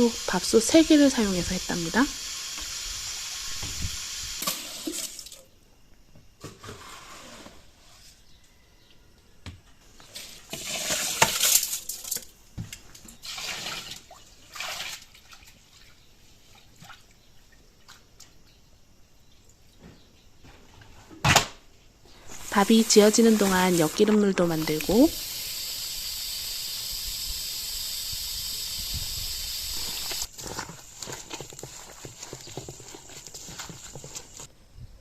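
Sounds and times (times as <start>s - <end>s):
water pouring and splashing: 0.0s - 5.5s, 10.1s - 12.2s, 13.2s - 17.2s, 22.2s - 34.5s.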